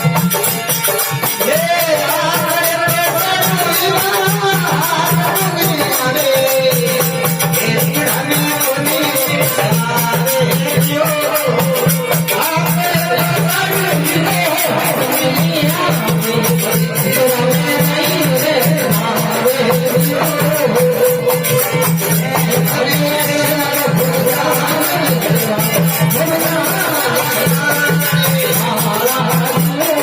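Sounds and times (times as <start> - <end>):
jingling percussion: 0.0 - 30.0
pulsing drum: 0.0 - 30.0.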